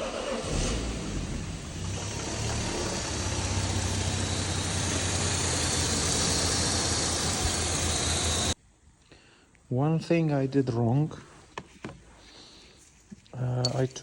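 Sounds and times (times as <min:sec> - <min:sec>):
car engine idling: 0:00.0 - 0:08.6.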